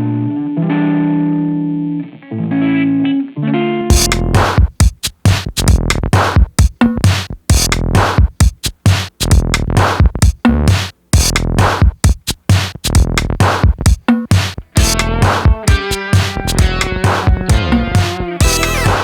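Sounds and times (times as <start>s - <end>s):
electronic music with drum-machine beat: 3.9s - 19.0s.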